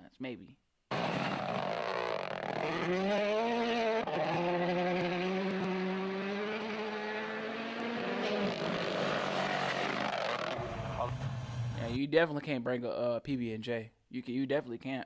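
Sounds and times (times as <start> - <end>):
rally car engine revving: 0.9 - 12.0.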